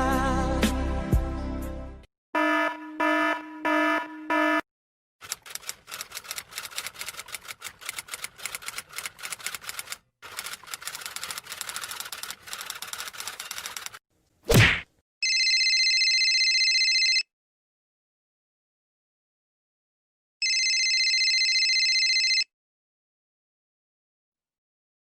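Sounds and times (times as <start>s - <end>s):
rapid clacking keystrokes: 5.2s - 14.0s.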